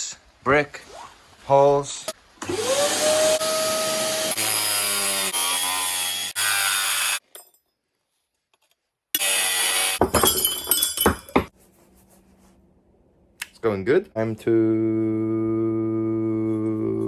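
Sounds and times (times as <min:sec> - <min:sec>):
vacuum cleaner motor whine: 0:02.4 - 0:04.3
metal knocks and clinks: 0:10.0 - 0:11.5.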